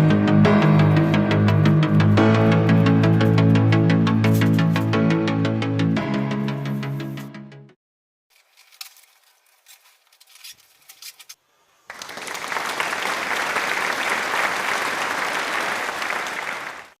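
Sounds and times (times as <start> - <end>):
faint clicks and rustles: 8.3 - 11.4.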